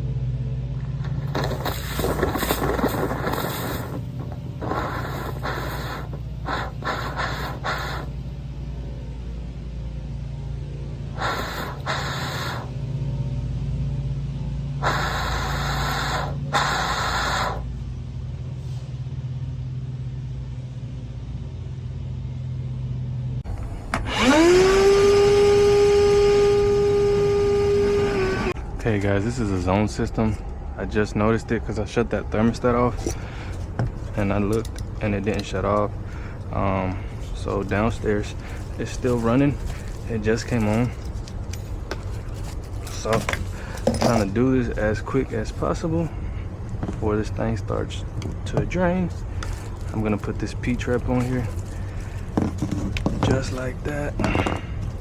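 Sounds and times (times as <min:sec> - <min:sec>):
motor whine: 0:00.0 - 0:28.8
low equipment hum: 0:00.0 - 0:55.0
rushing hiss bursts: 0:01.3 - 0:08.2, 0:11.2 - 0:12.8, 0:14.8 - 0:17.7.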